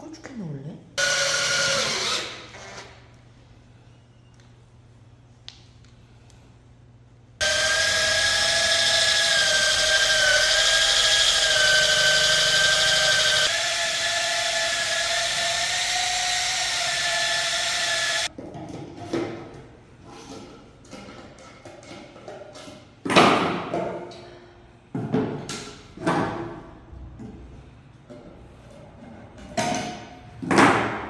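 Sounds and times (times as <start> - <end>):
electric power tool whining: 1.0 - 3.0, 7.4 - 18.3.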